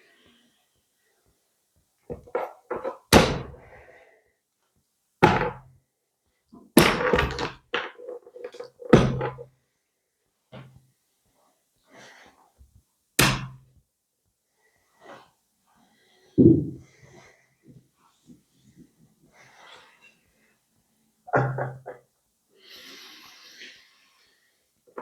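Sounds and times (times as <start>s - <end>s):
hard knocks and thunks: 16.4s - 16.8s.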